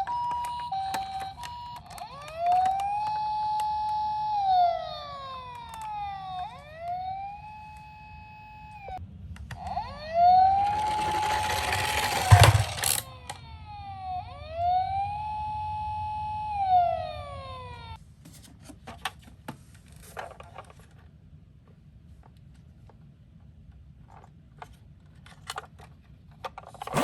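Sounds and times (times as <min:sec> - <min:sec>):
toy electronic siren wailing: 0:00.0 - 0:18.0
rushing rattle: 0:10.7 - 0:13.0.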